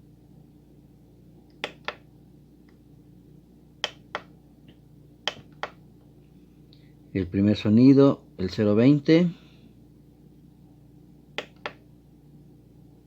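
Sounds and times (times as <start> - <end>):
keyboard panel buttons clicking: 1.5 - 2.0, 5.2 - 5.8, 11.4 - 11.8.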